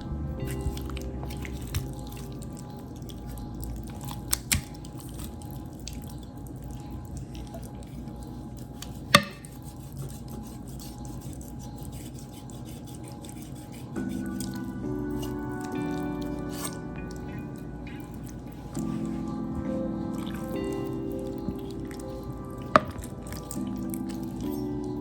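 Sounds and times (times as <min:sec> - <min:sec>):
knife scraping meat from bone: 0:08.8 - 0:15.4, 0:16.5 - 0:16.8.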